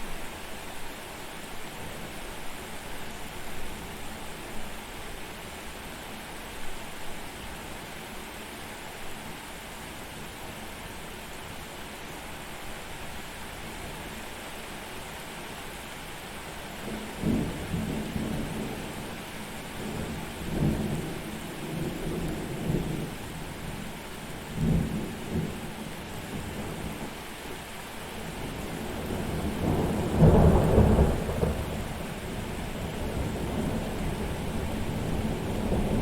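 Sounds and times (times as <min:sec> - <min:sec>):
steady rain hiss: 0:00.0 - 0:36.0
rolling thunder: 0:28.6 - 0:36.0.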